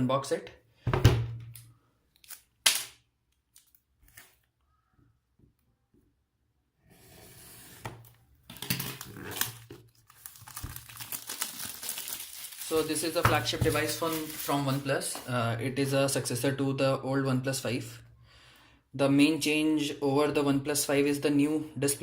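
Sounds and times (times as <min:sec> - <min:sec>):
packaging crinkling and rustling: 0:08.5 - 0:15.4.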